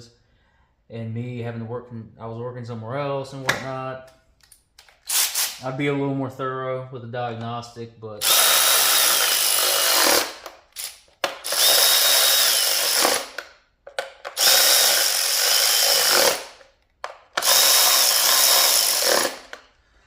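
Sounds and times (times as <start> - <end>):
cordless power tool whining: 8.2 - 19.8.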